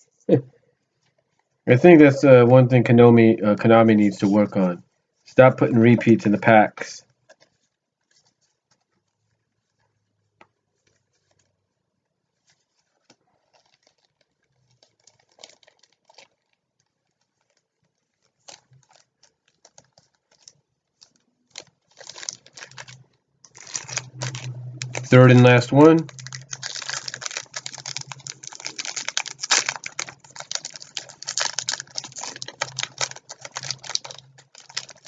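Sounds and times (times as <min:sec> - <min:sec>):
trading cards rustling: 0:05.4 - 0:06.6, 0:12.3 - 0:35.0
foil pack crinkling: 0:12.3 - 0:35.0.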